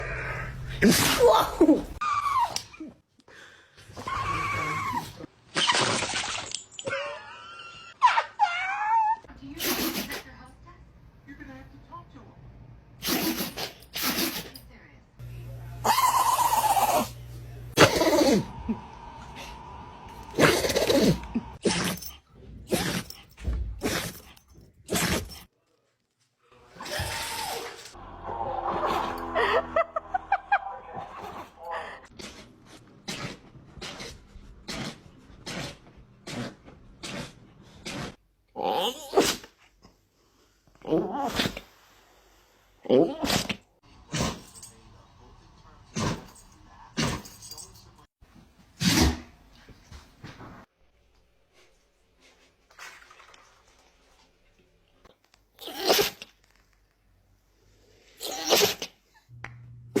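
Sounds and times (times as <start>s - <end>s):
dog sneezing: 9.6s - 10.3s, 13.0s - 14.6s, 39.1s - 39.6s, 48.8s - 49.2s, 55.6s - 56.3s, 58.2s - 59.0s.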